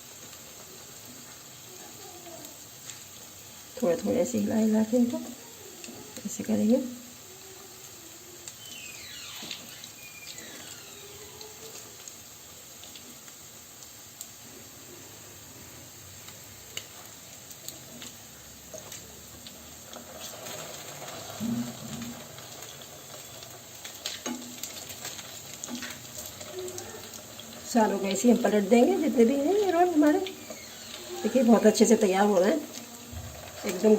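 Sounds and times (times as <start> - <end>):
food sizzling in hot oil: 0.0 - 33.9.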